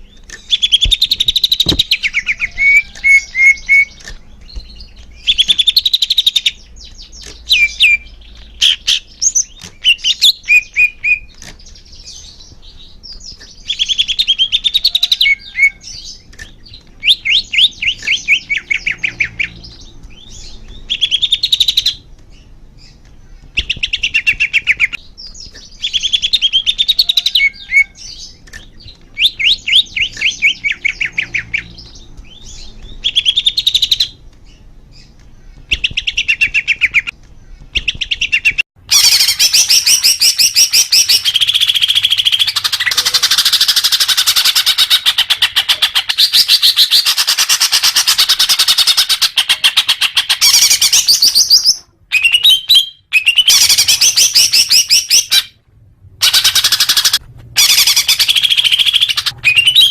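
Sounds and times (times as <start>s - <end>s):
bird singing downward-sliding notes: 56.2s - 59.9s.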